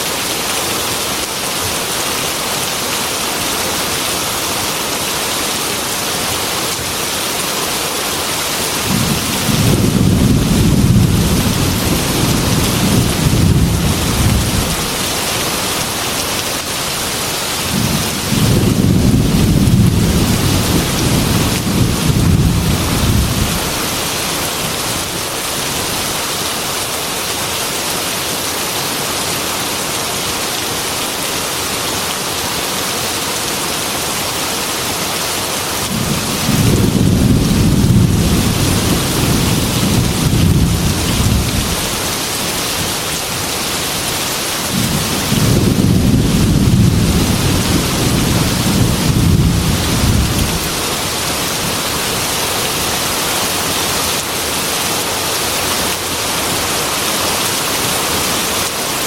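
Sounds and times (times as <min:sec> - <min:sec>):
heavy rain on a metal roof: 0:00.0 - 0:59.0
low rolls of thunder: 0:08.8 - 0:15.0, 0:17.7 - 0:23.8, 0:35.9 - 0:42.0, 0:44.7 - 0:50.7.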